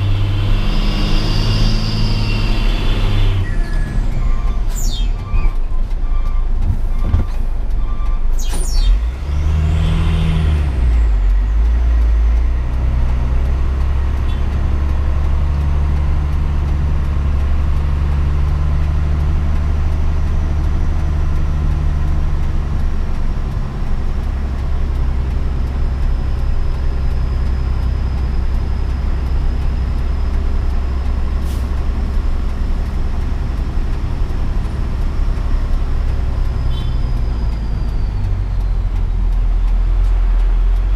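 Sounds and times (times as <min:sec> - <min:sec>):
diesel truck engine running: 0:00.0 - 0:40.9
sharp clicks: 0:10.6 - 0:40.9.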